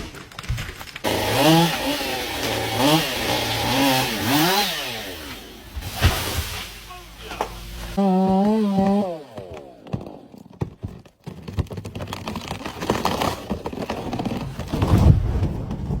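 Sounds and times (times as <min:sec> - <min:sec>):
person yelling: 0:06.9 - 0:07.6.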